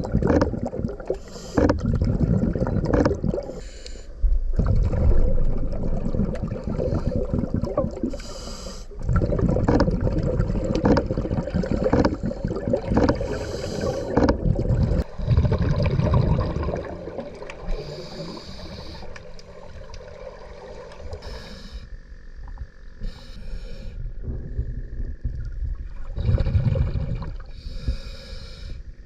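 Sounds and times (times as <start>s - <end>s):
bubbling exhales: 0.0s - 21.9s, 25.7s - 28.8s
regulator hissing inhales: 1.2s - 1.8s, 3.5s - 4.2s, 8.1s - 9.0s, 13.2s - 14.2s, 17.7s - 19.4s, 21.1s - 21.9s, 23.0s - 24.1s, 27.5s - 28.9s.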